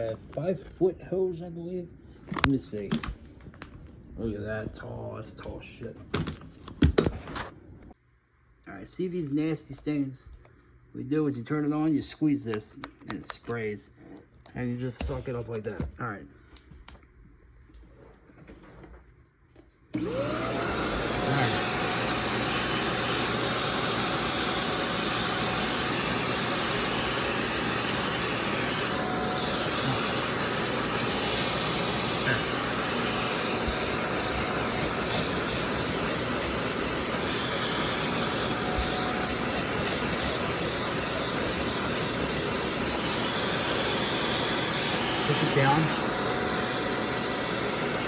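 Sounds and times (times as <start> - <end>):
carpet cleaner motor whining: 19.9 - 48.0.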